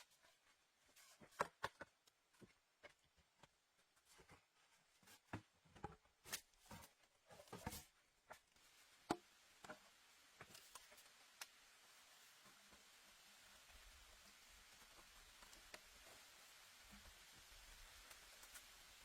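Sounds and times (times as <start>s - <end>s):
faint steady hiss: 0.0s - 19.0s.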